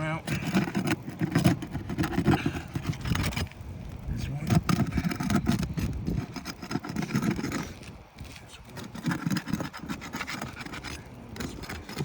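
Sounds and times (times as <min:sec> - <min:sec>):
roof shingles scraping and rubbing: 0:00.0 - 0:12.0.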